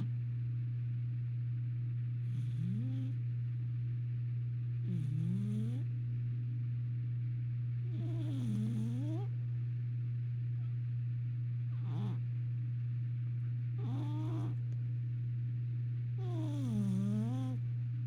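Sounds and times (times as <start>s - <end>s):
steady low hum: 0.0s - 18.0s
cat snoring: 2.2s - 3.2s, 4.8s - 5.9s, 7.9s - 9.3s, 11.7s - 12.2s, 13.8s - 14.6s, 16.2s - 17.6s.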